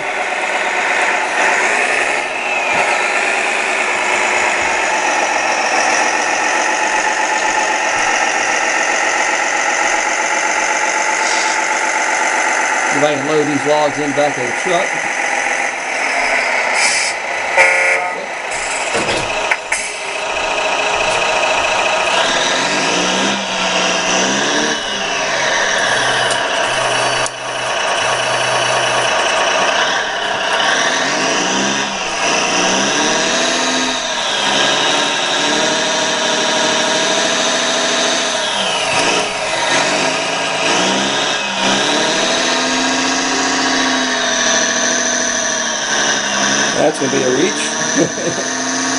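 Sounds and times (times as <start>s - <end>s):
hydraulic pump whining: 0.0s - 48.9s.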